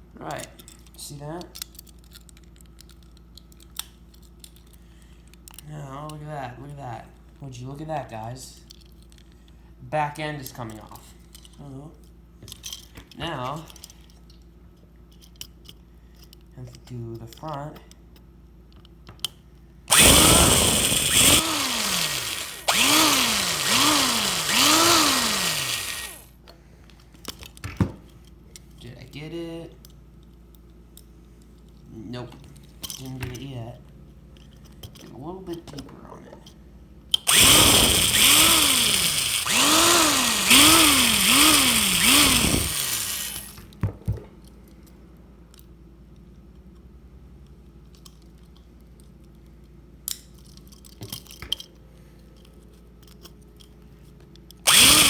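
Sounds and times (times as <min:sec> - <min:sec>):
electric drill drilling: 0:19.9 - 0:26.3, 0:37.3 - 0:43.6, 0:54.7 - 0:55.0.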